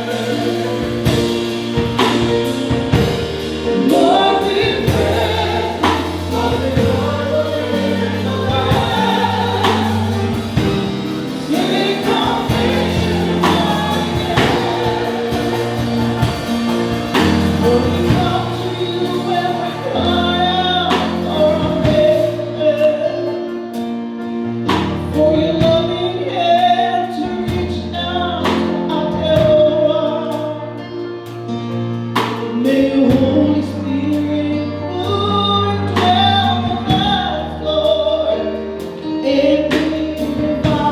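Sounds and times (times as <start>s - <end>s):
choir singing a hymn: 0.0s - 23.8s
instrumental accompaniment with beat: 0.0s - 26.2s.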